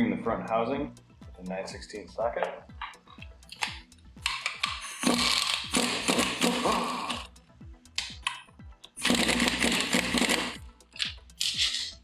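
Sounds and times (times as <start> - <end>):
socket ratchet clicking: 2.8 - 7.3, 7.9 - 11.9.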